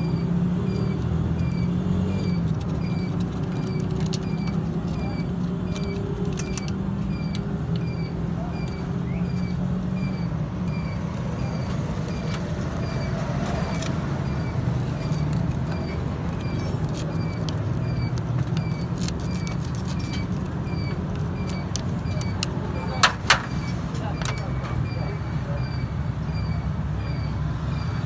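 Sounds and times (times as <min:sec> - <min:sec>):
engine running: 0:00.0 - 0:28.0
clicks: 0:10.7 - 0:25.0.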